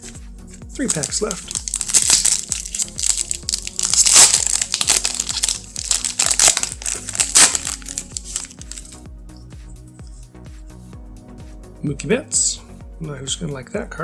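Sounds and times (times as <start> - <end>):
foil wrapper crinkling and tearing: 0.8 - 9.0.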